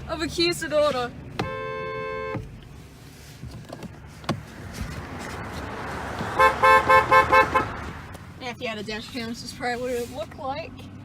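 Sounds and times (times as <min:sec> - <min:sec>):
car horn honking: 0:01.4 - 0:02.5, 0:06.2 - 0:07.9.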